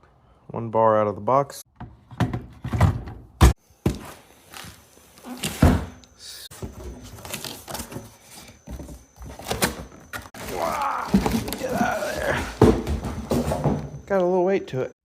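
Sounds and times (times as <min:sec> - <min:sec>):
cardboard rustling: 0:06.6 - 0:13.8.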